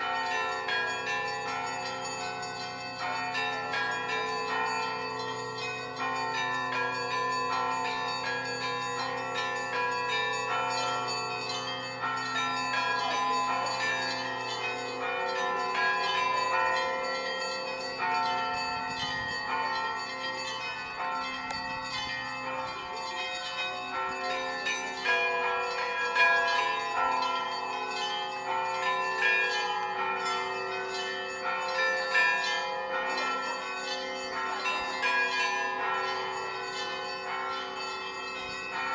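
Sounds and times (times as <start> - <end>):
church bells pealing: 0.0 - 38.9
low bell hum: 0.2 - 29.4.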